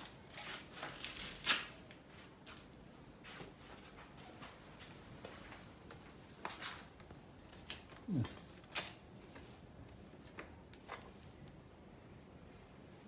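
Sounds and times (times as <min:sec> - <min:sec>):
tools and bicycle parts clicking: 0:06.7 - 0:11.2.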